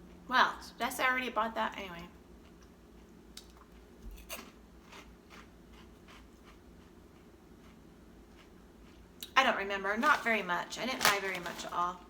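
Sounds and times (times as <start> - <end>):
person chewing crunchy snack: 2.4 - 9.4.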